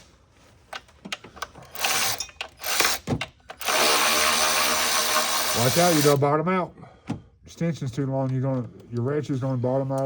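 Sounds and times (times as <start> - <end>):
power tool running: 1.8 - 6.2.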